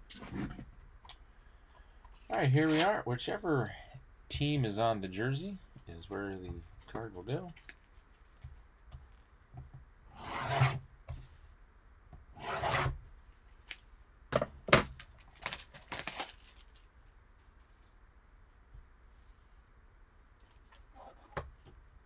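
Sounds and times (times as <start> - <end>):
card packaging tearing: 15.2 - 16.8.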